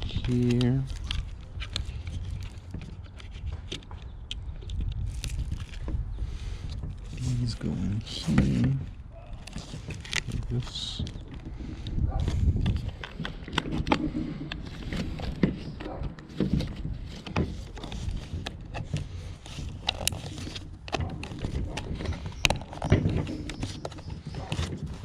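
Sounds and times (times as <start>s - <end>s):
plastic parts clicking into place: 0.0s - 6.0s, 9.4s - 25.0s
rustling handling noise: 0.0s - 25.0s.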